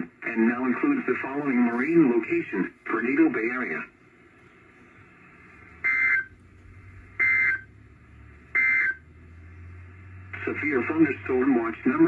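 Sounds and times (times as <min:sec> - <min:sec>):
faint radio hum: 0:00.0 - 0:12.0.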